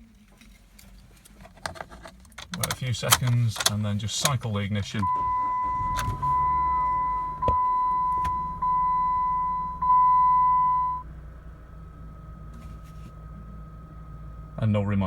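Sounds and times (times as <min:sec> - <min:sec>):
ignition key clicks: 0:01.4 - 0:10.1
dashboard warning chime: 0:04.9 - 0:15.0.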